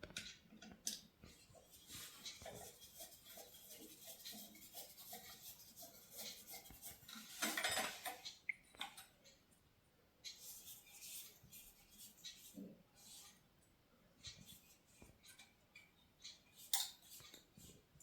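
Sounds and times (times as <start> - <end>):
tools and parts clicking and clinking: 7.2 - 9.1.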